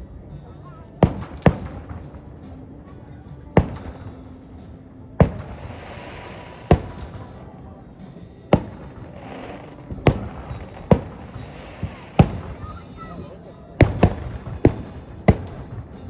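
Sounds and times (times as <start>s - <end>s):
fireworks hissing: 0.0s - 16.0s
fireworks bangs: 1.0s - 16.0s.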